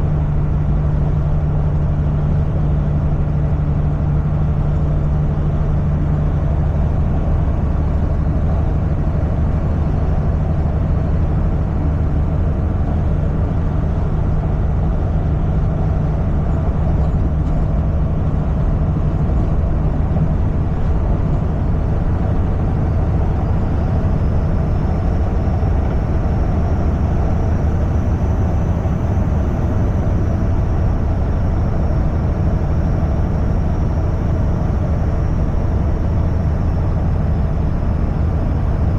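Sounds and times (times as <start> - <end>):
diesel engine drone: 0.0 - 38.9
road and wind noise: 0.0 - 38.9.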